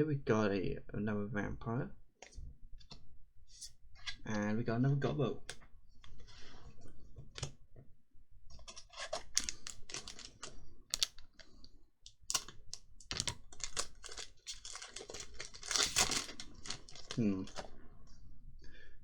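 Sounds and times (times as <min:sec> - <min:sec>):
card rustling: 0:08.6 - 0:17.7
trading cards flipped through: 0:08.7 - 0:11.2, 0:12.1 - 0:17.1.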